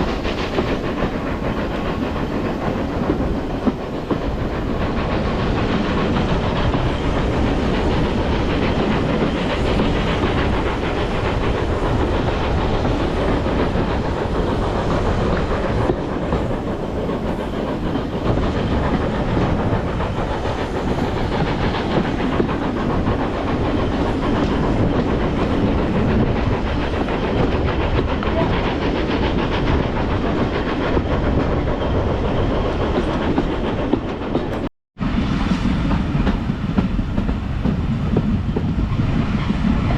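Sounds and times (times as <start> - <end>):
train rumbling over rails: 0.0 - 39.9.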